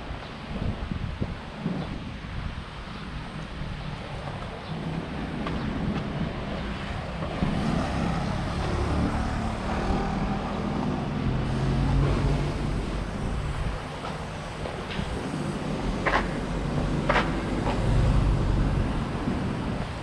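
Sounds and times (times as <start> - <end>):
wind noise on microphone: 0.0 - 20.0
engine passing: 4.8 - 14.6.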